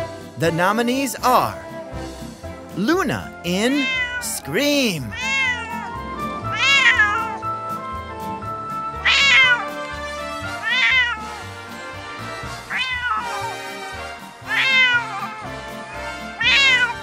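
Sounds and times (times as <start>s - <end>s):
background music: 0.0s - 17.0s
wild cat screaming: 3.8s - 4.2s, 5.1s - 7.4s, 9.0s - 9.9s, 10.5s - 11.4s, 12.7s - 13.7s, 14.4s - 17.0s.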